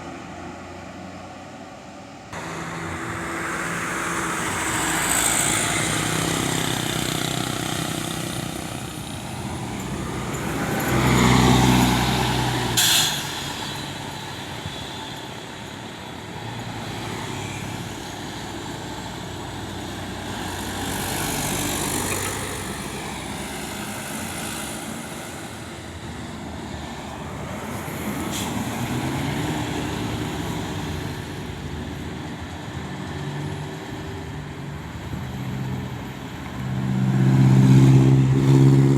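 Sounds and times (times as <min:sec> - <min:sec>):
buses running in traffic: 0:00.0 - 0:38.9
short sharp hisses: 0:12.8 - 0:13.4.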